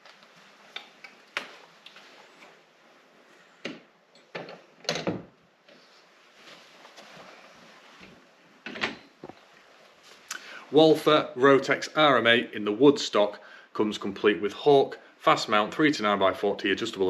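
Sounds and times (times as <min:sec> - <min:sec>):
knocks and clunks of handling: 0:03.6 - 0:05.3.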